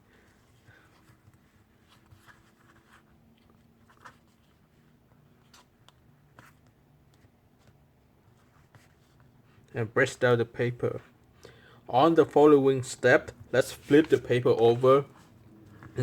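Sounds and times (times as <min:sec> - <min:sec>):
paper being folded and creased: 0:00.3 - 0:06.6, 0:13.6 - 0:16.0.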